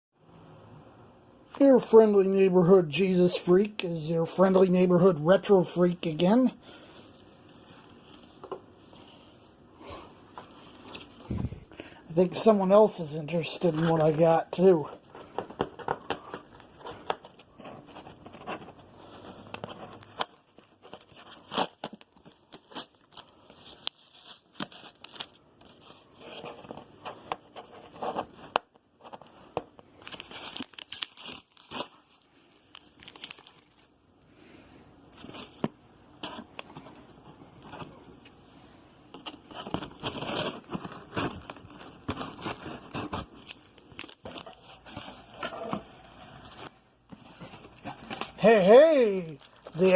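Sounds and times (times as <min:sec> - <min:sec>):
packing material crinkling: 0:10.4 - 0:34.0, 0:39.2 - 0:49.9.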